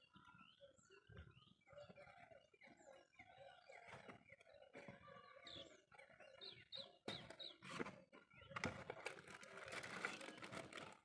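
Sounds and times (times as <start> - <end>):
faint bird chirps: 0.0 - 10.6
packaging rustling and clicks: 8.8 - 11.0.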